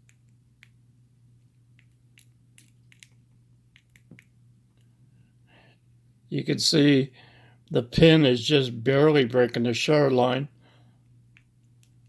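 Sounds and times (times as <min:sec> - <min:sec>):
steady low hum: 0:00.0 - 0:12.0
small metal parts clicking: 0:01.8 - 0:03.2.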